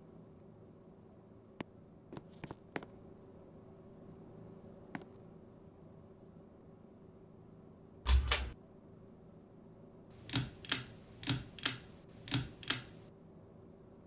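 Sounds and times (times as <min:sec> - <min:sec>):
sharp mechanical clicks: 0:08.1 - 0:08.6, 0:10.2 - 0:13.0.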